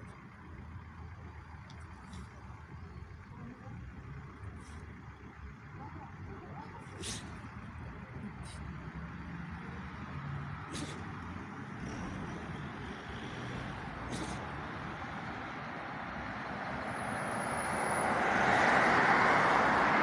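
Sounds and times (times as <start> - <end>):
hiss of cars on road: 4.4 - 5.2, 6.8 - 20.0
vehicle passing close: 6.8 - 20.0.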